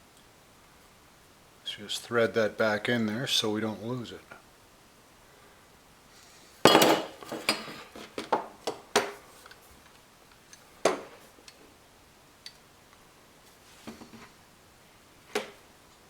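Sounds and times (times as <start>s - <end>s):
clinks and knocks of metal parts: 6.7s - 8.4s.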